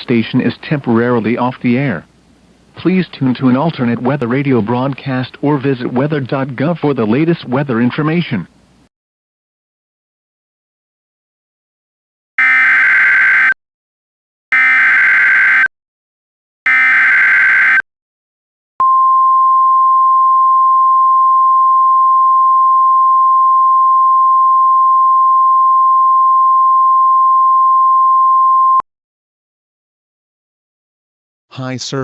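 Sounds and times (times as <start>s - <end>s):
warning alarm tone: 12.4s - 13.6s, 14.5s - 15.7s, 16.7s - 17.8s.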